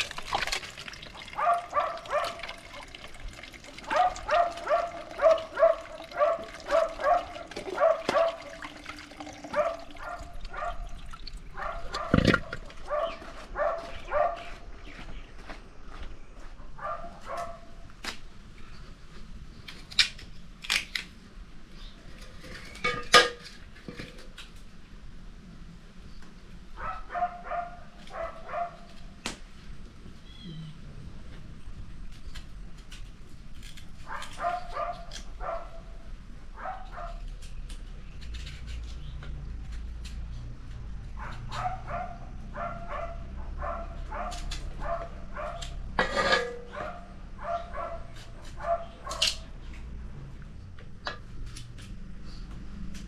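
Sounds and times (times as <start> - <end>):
dog barking: 1.4 - 2.5, 3.9 - 8.5, 9.5 - 10.9, 11.6 - 14.6, 16.8 - 17.8, 26.8 - 28.9, 34.1 - 36.0, 36.6 - 37.2, 41.2 - 45.8, 46.7 - 49.4.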